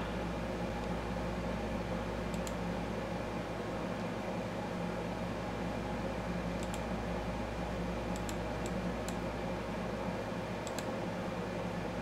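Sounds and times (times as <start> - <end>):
steady background hum: 0.0 - 12.0
computer mouse clicking: 2.3 - 2.6, 6.6 - 6.9, 8.1 - 9.2, 10.6 - 10.9.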